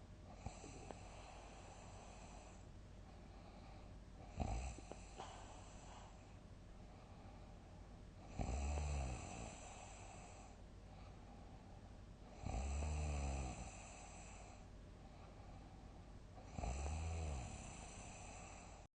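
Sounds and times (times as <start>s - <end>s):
person snoring loudly: 4.3s - 5.0s, 8.3s - 10.0s, 12.4s - 14.2s, 16.5s - 18.8s.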